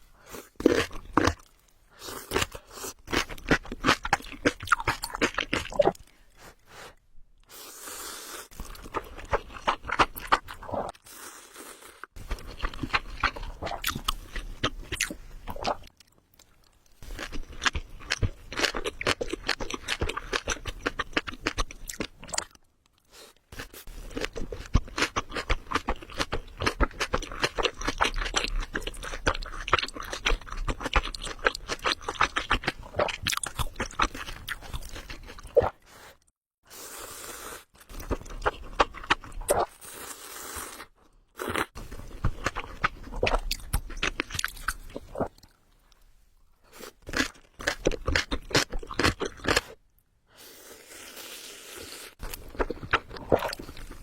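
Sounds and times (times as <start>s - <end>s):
person chewing crunchy food: 0.2s - 7.0s, 8.2s - 35.9s, 37.8s - 49.9s, 50.6s - 54.0s.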